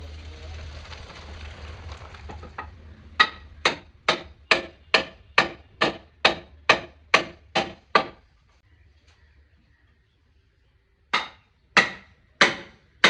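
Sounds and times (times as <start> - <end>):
hammer striking wood: 3.2 - 8.2, 11.1 - 13.0.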